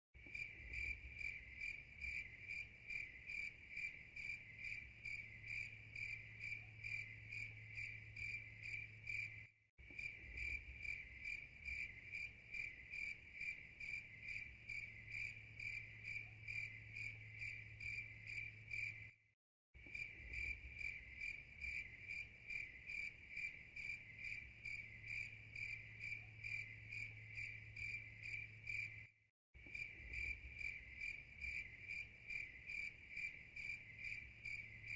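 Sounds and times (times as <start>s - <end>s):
crickets chirping: 0.2s - 19.2s, 19.8s - 34.9s.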